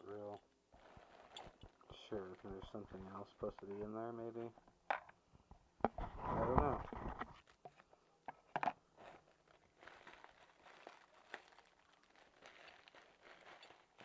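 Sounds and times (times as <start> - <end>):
packing material rustling: 0.2 - 3.8, 9.0 - 14.0.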